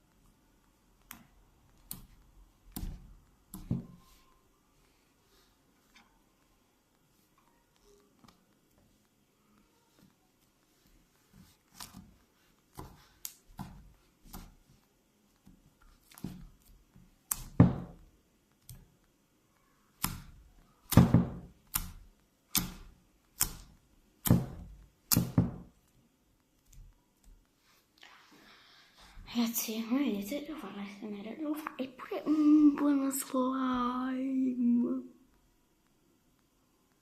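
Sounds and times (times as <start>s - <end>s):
slime slapping thuds: 20.0s - 25.7s.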